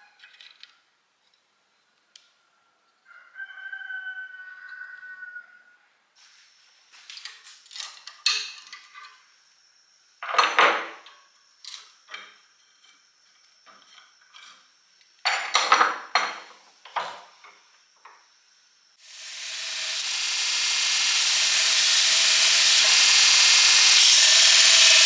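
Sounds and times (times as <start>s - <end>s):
faint high whine: 19.0s - 25.0s.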